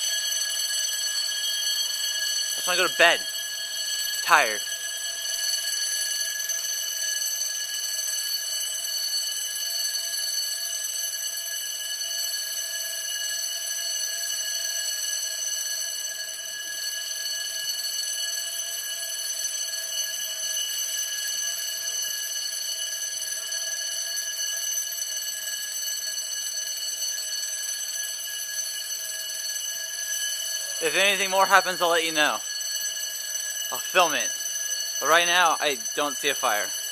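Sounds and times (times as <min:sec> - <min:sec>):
fire alarm ringing: 0:00.0 - 0:36.9.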